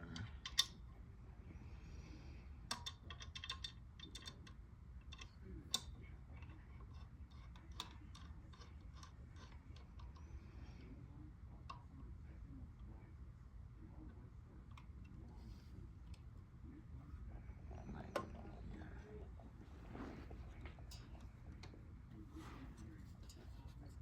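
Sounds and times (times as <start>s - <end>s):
small hardware clicking and tapping: 0.0s - 0.8s, 2.7s - 10.3s.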